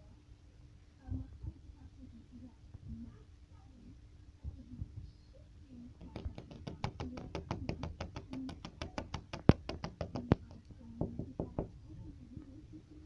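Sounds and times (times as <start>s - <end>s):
sharp knocks or taps: 6.0s - 11.8s.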